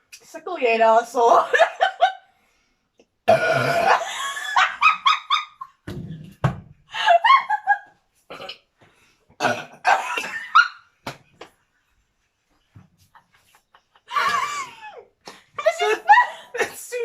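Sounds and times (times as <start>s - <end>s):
laughter: 1.5s - 2.2s, 3.9s - 5.8s, 7.0s - 8.0s, 13.0s - 17.0s
person burping loudly: 3.2s - 4.1s, 8.3s - 8.7s, 9.4s - 10.3s.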